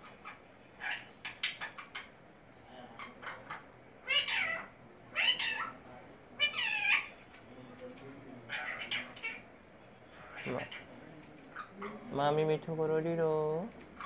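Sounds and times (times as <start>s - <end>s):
parrot meow-like calls: 0.0s - 2.1s, 3.0s - 5.8s, 6.4s - 7.2s, 8.5s - 9.5s, 10.2s - 10.9s.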